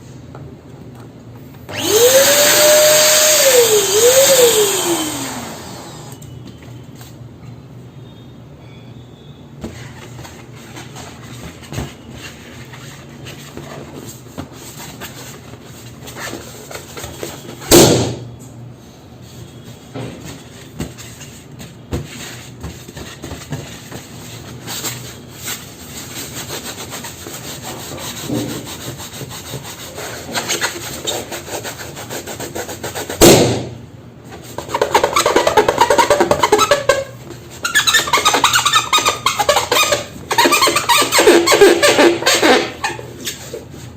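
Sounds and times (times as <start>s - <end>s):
rubber balloons rubbing: 20.4s - 33.7s, 34.4s - 43.9s
balloon popping: 33.2s - 33.8s.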